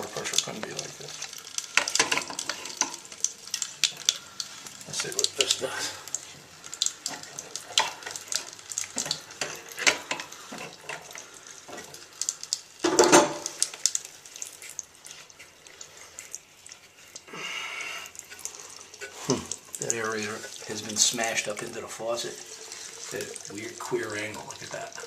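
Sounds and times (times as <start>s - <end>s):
faucet sputtering water: 0.0s - 25.0s
water rushing: 3.8s - 9.9s, 18.0s - 25.0s.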